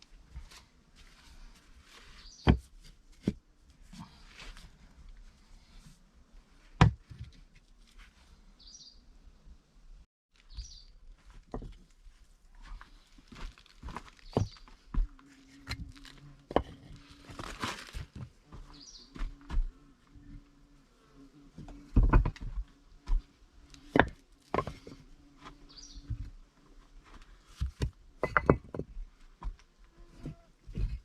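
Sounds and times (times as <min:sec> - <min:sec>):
bird chirps: 0:10.5 - 0:10.9
stones knocking on stones: 0:13.4 - 0:17.6, 0:21.9 - 0:23.2, 0:23.8 - 0:25.0, 0:27.6 - 0:29.6.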